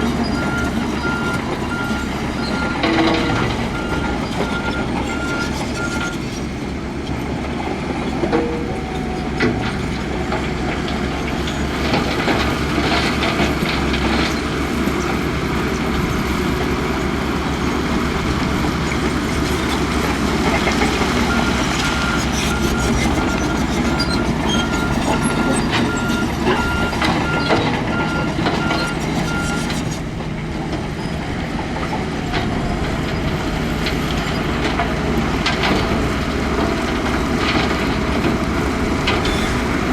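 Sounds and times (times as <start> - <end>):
heavy machinery running: 0.0 - 39.9
reversing alarm beeping: 0.3 - 6.1, 21.1 - 29.8.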